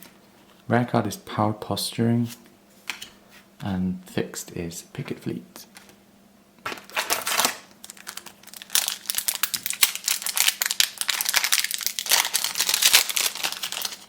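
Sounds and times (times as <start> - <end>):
wrapper crinkling: 6.6 - 14.0.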